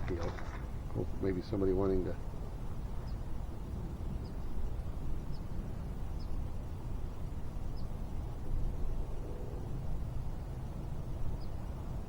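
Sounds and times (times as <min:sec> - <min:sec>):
low outdoor rumble: 0:00.0 - 0:02.6.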